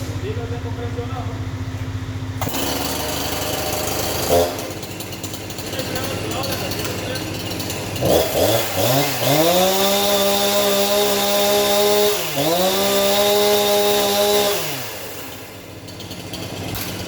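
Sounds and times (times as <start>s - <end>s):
chainsaw engine revving: 2.4s - 17.0s.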